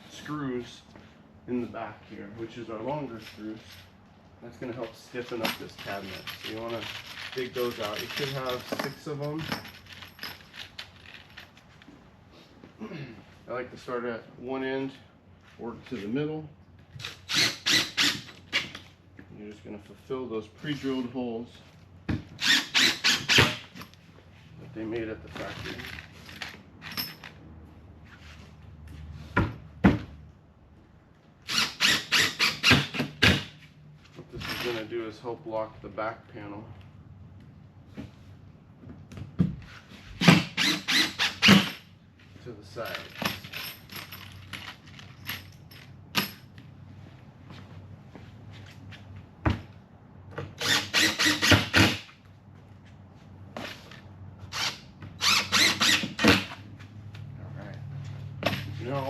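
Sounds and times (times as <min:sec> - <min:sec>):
power drill driving screws: 0:17.0 - 0:18.7, 0:22.4 - 0:23.6, 0:31.5 - 0:33.5, 0:40.2 - 0:41.8, 0:50.6 - 0:52.1, 0:54.5 - 0:56.6.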